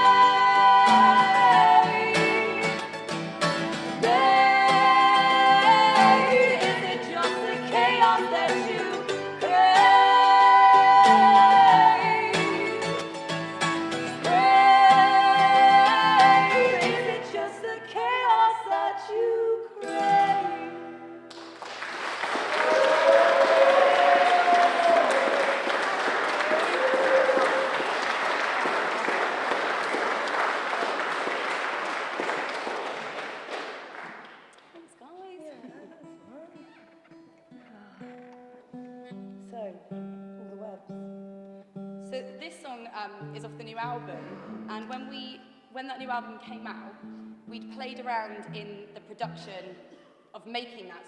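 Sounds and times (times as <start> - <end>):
women singing held notes: 0.0 - 3.1, 3.9 - 13.2, 14.1 - 21.3
strummed acoustic guitar: 0.0 - 18.9, 19.7 - 21.6, 35.2 - 42.4, 43.2 - 50.2
audience applauding: 21.3 - 35.0.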